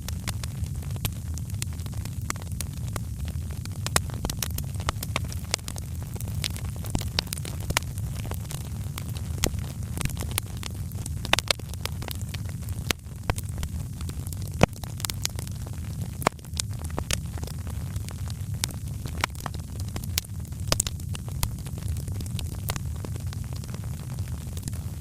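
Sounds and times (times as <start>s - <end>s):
wood fire crackling: 0.0s - 25.0s.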